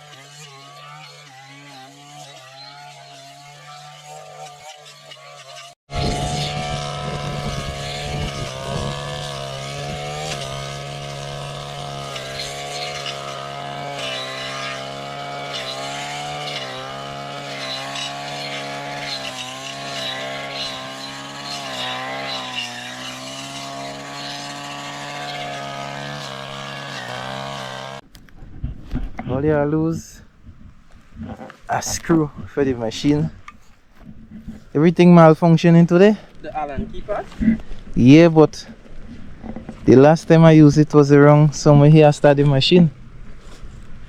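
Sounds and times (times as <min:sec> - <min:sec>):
small two-stroke engine revving: 0:00.0 - 0:28.0.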